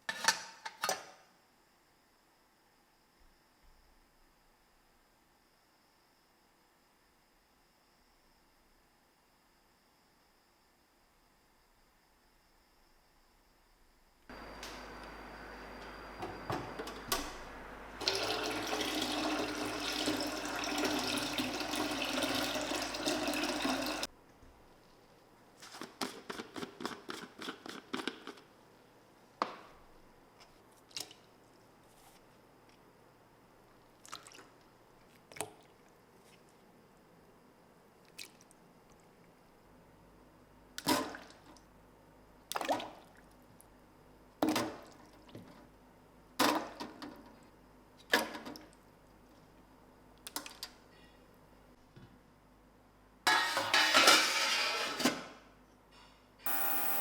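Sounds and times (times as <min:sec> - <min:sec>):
tap water running: 0:18.0 - 0:24.1.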